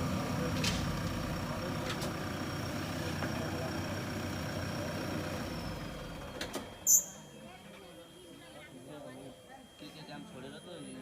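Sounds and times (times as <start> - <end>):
diesel engine running: 0.0 - 6.8.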